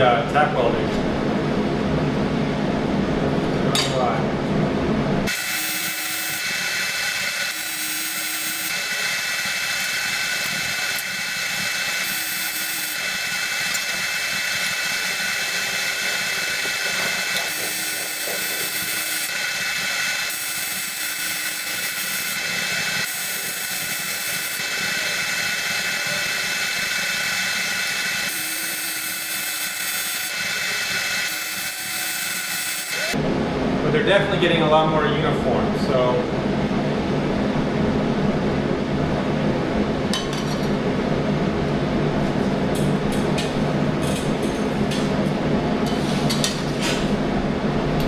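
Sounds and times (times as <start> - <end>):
constant hum: 0.0 - 48.0
welding arc buzzing: 5.2 - 33.2.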